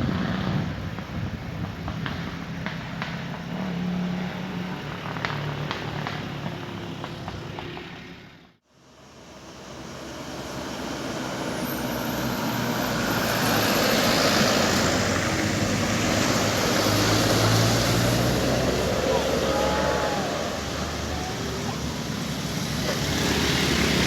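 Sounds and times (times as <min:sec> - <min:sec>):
bus engine hum: 0:00.0 - 0:24.0
road noise: 0:00.0 - 0:24.0.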